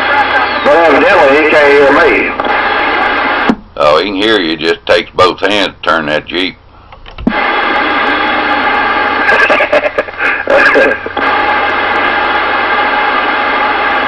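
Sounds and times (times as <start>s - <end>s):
garbled radio voice: 0.0s - 2.5s, 3.8s - 6.5s, 9.1s - 11.5s
radio static hiss: 0.0s - 14.0s.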